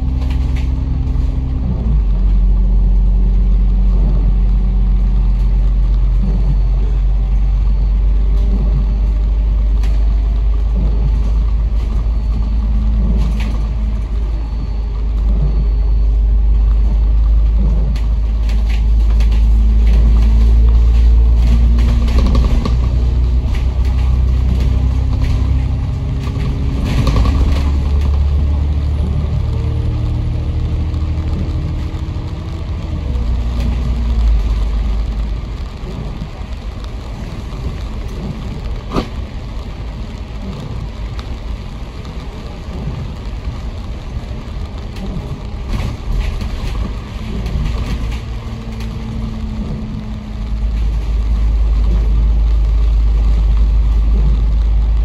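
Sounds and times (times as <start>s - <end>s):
bus engine rumbling: 0.0s - 55.0s.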